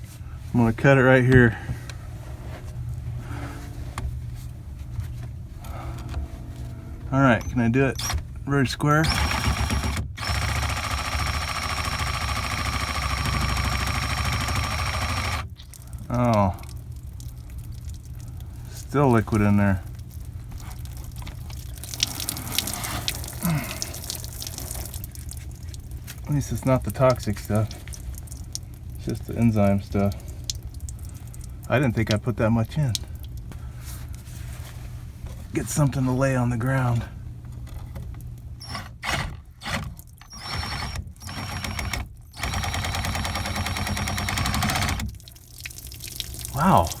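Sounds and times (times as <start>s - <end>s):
steady low hum: 0.0s - 47.0s
power saw cutting pipe: 5.7s - 8.2s, 8.9s - 15.5s, 38.6s - 45.1s
liquid dripping from pipe: 9.8s - 33.6s, 41.2s - 47.0s.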